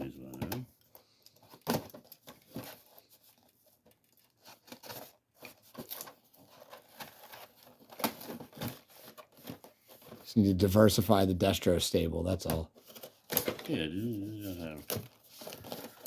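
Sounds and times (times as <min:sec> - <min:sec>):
packaging tearing and crinkling: 0:12.9 - 0:16.0.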